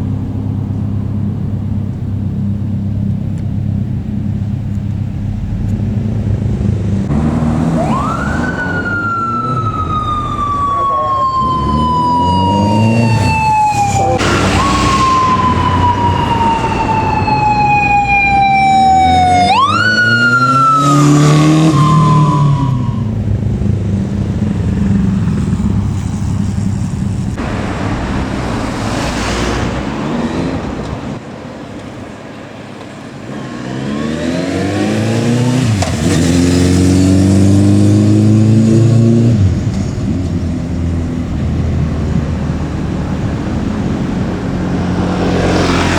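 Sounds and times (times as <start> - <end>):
motorcycle engine accelerating: 0.0 - 31.2, 33.4 - 45.9
police siren wailing: 7.1 - 23.2.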